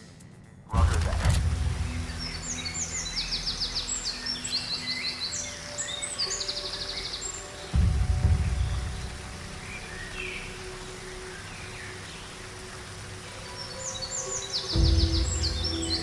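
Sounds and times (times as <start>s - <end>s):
low bass hum: 0.4s - 4.6s, 7.7s - 13.4s, 14.8s - 16.0s.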